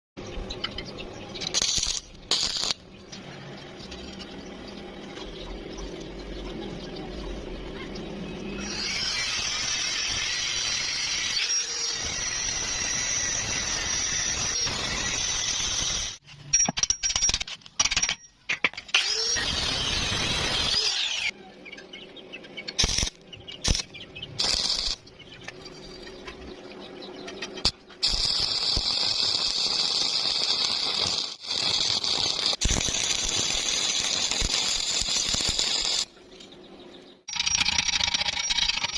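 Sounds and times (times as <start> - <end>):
welding arc hissing: 1.5 - 2.8, 8.6 - 16.2, 19.0 - 21.3, 22.8 - 25.0, 28.0 - 36.1.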